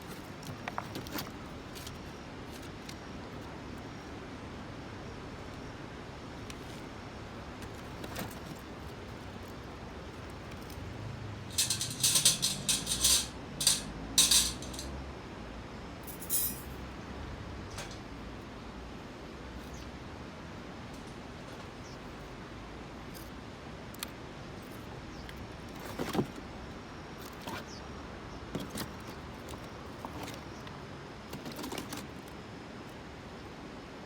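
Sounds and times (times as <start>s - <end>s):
metallic jingling and rattling: 10.2s - 15.0s, 16.0s - 16.7s.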